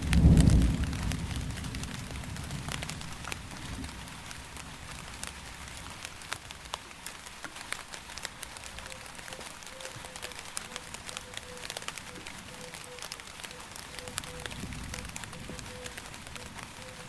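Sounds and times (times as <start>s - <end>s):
low rumble of thunder: 0.0s - 5.8s, 14.2s - 17.0s
steady rain drops ticking: 0.0s - 17.0s.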